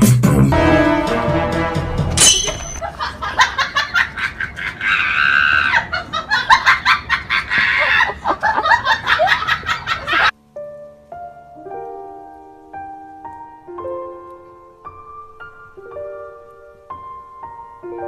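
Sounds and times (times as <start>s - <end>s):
music: 0.0s - 2.8s, 10.3s - 18.0s.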